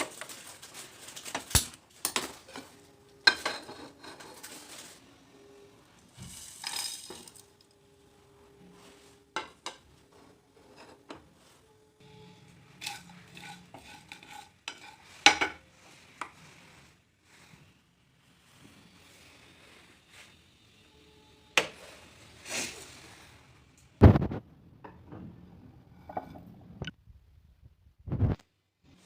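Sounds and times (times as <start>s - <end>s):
cutlery clinking on dishes and pans: 1.2s - 5.0s, 12.8s - 15.6s.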